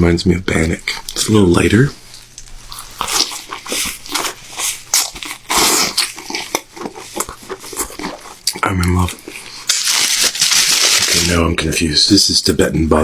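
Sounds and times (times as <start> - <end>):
person chewing with wet mouth sounds: 2.0 - 11.3.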